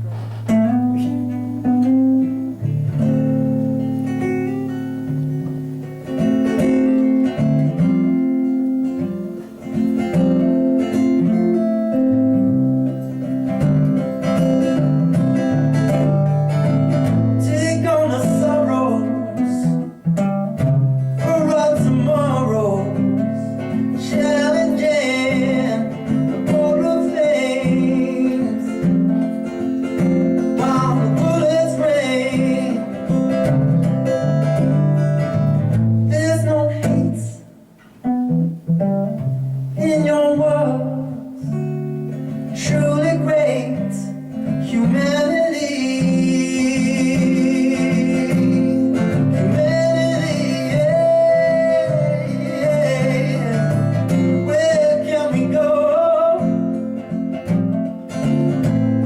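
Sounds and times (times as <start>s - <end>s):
acoustic guitar strumming: 0.0s - 59.0s.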